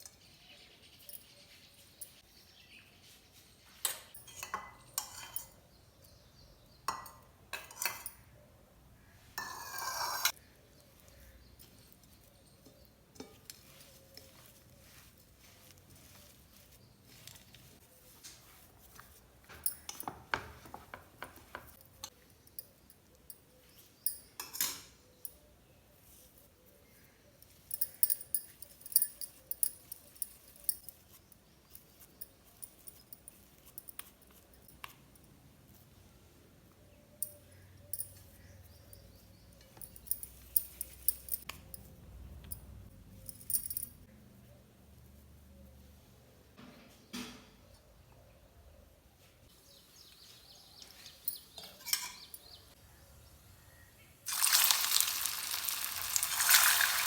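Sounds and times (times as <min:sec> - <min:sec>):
utensils clinking against dishes: 0:03.9 - 0:05.7, 0:27.7 - 0:31.0, 0:50.9 - 0:52.8.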